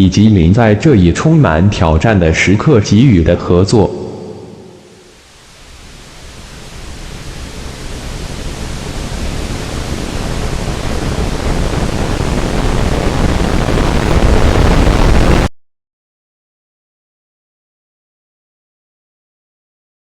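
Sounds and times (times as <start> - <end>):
rushing static-like noise: 3.4 - 15.5.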